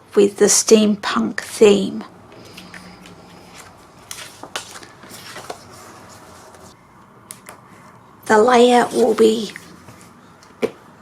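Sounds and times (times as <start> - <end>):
paper rustling: 2.5 - 6.8.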